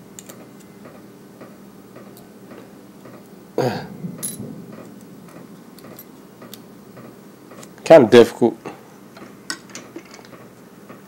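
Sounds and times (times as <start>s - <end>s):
small clicks handling tiny parts: 0.2s - 0.7s
throat clearing: 3.6s - 4.0s.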